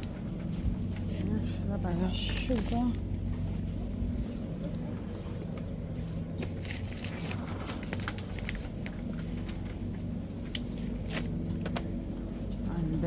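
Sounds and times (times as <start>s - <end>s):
groceries clicking and rustling: 0.0s - 12.7s
low shop hum: 0.0s - 13.0s.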